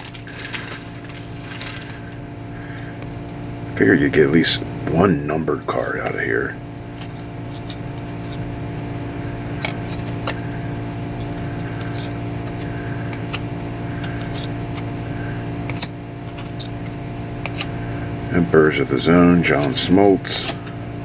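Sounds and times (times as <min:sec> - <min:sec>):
trading cards being shuffled: 0:00.0 - 0:02.3, 0:06.9 - 0:08.9, 0:09.6 - 0:10.4, 0:11.3 - 0:14.9, 0:19.5 - 0:20.7
steady mechanical hum: 0:00.0 - 0:21.0.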